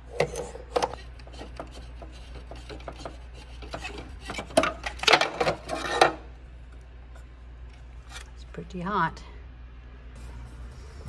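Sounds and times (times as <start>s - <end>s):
parts scraping and clicking: 0.0s - 8.4s
steady low hum: 0.0s - 11.0s.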